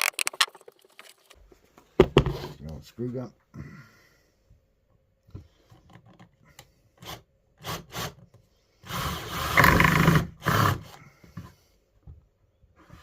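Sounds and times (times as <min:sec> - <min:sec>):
screw gun driving screw into wood: 0:08.9 - 0:11.0.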